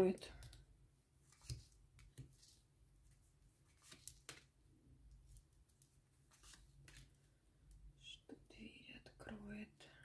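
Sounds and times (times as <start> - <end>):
cards clicking and rustling: 1.3 - 2.6, 3.7 - 4.5.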